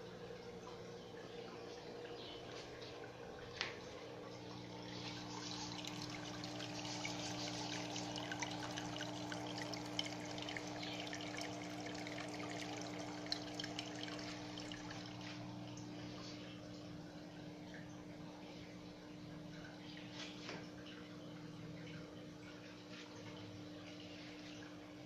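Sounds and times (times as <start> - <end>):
pump motor hum: 0.0 - 25.0
water drips: 0.0 - 25.0
water pouring into tank: 4.1 - 16.2.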